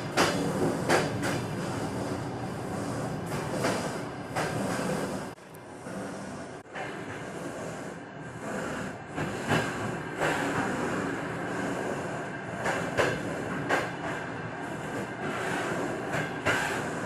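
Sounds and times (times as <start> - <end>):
train wheels knocking on rail joints: 0.0 - 2.3, 3.1 - 5.4, 8.4 - 17.0
train running rumble: 0.0 - 17.0.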